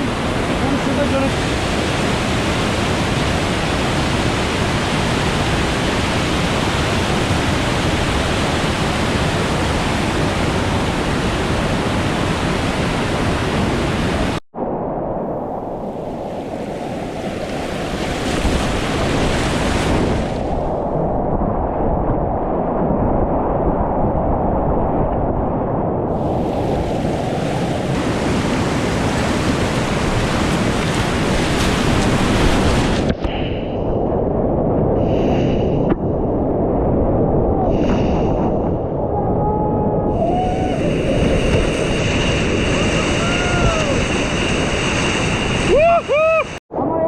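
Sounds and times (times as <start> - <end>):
rushing river whitewater: 0.0 - 14.4, 26.2 - 33.1, 40.2 - 46.6.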